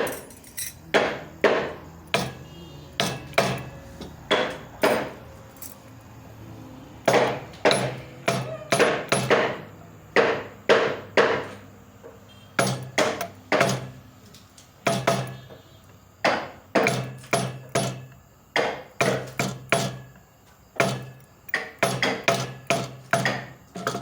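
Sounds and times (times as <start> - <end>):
mallet striking chisel into wood: 0.9 - 5.2, 7.0 - 11.6, 12.6 - 14.0, 14.8 - 15.6, 16.2 - 20.2, 20.8 - 24.0.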